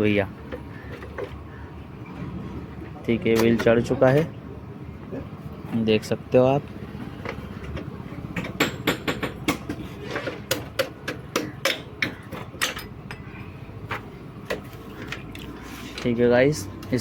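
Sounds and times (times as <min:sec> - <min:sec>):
hammer tapping on metal: 0:08.3 - 0:13.3.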